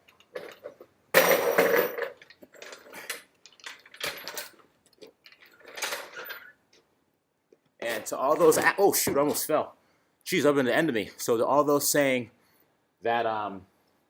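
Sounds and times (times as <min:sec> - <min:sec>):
metal tools clinking: 0:05.2 - 0:06.6.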